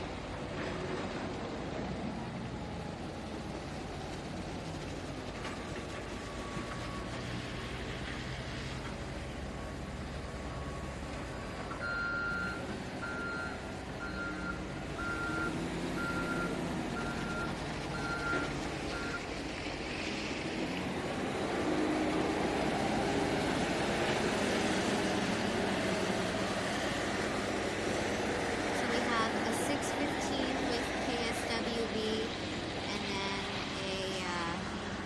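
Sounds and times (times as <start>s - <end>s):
reversing alarm beeping: 11.7s - 19.2s.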